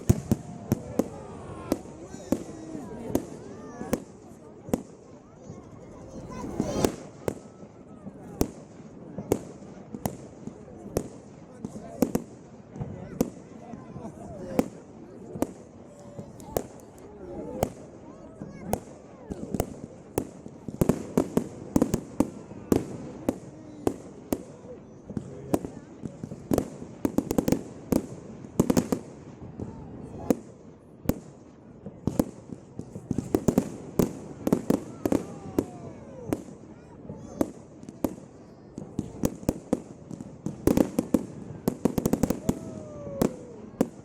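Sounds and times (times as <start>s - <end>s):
fireworks bursting with sharp bangs: 0.0s - 44.0s
falling firework whistle: 42.2s - 44.0s.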